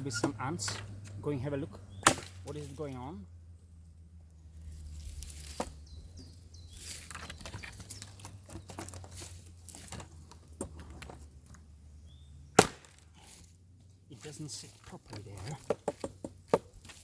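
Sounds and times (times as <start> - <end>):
sharp machete strike: 2.0 - 2.5, 12.6 - 13.0
rotting wood cracking and tearing: 2.0 - 2.7, 6.8 - 11.7, 12.6 - 13.5.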